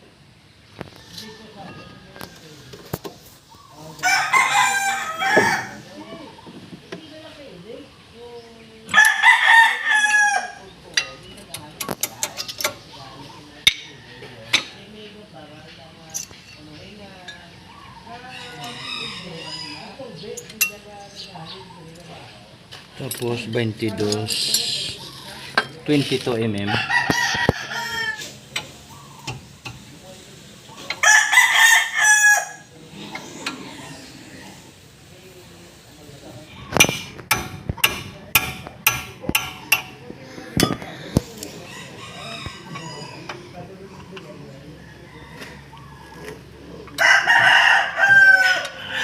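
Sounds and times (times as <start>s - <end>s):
rooster crowing: 4.0s - 6.0s, 8.9s - 10.6s, 18.2s - 20.1s, 26.6s - 28.4s, 31.0s - 32.7s, 41.6s - 43.6s, 44.7s - 49.0s.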